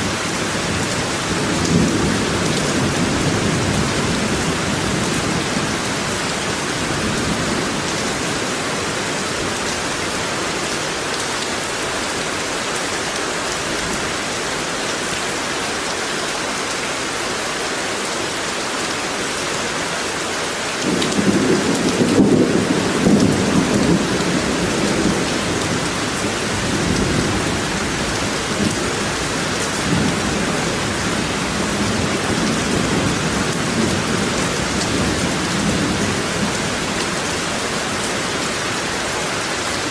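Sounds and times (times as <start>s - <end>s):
steady rain: 0.0s - 39.9s
thunder rumbling: 20.8s - 37.0s.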